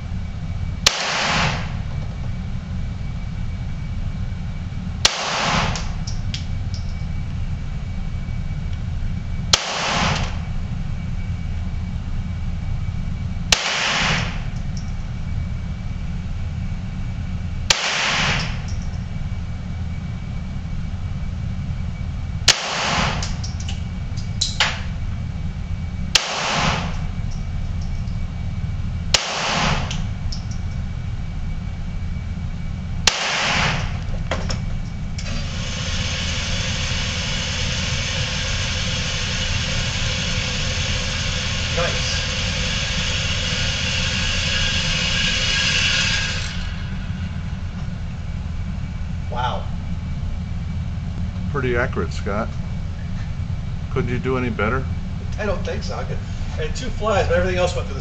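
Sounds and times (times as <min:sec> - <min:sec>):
steady low rumble: 0:00.0 - 0:58.0
pistol shots: 0:00.9 - 0:01.8, 0:05.0 - 0:05.9, 0:09.5 - 0:10.4, 0:13.5 - 0:14.4, 0:17.7 - 0:18.6, 0:22.5 - 0:23.4, 0:26.2 - 0:27.0, 0:29.1 - 0:30.0, 0:33.1 - 0:34.0.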